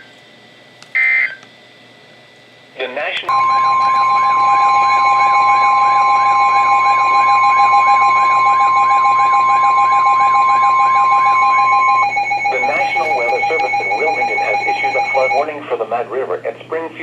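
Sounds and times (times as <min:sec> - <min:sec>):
loud steady alarm tone: 0:01.0 - 0:01.4, 0:03.3 - 0:15.6.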